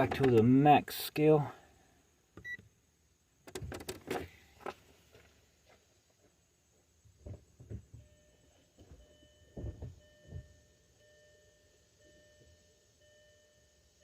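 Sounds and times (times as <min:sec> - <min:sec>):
car warning chime beeping: 0:02.4 - 0:02.6, 0:08.0 - 0:14.0
soft knocks and thumps: 0:07.1 - 0:08.1, 0:08.8 - 0:10.6.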